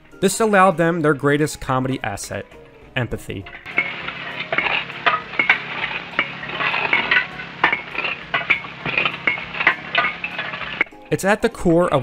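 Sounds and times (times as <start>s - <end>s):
dishes and cutlery clattering: 3.4s - 11.0s
steady low hum: 3.6s - 10.9s.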